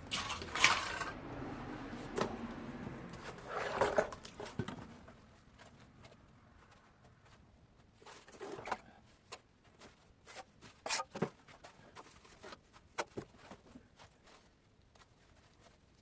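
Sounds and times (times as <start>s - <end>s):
trowel scraping mortar: 3.3s - 4.4s, 10.4s - 11.2s.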